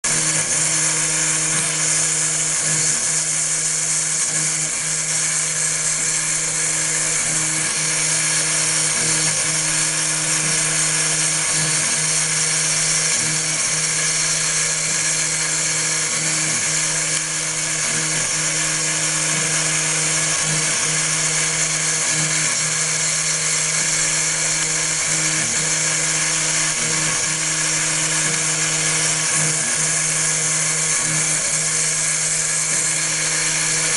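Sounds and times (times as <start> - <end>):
milling spindle high whine: 0.0 - 33.9.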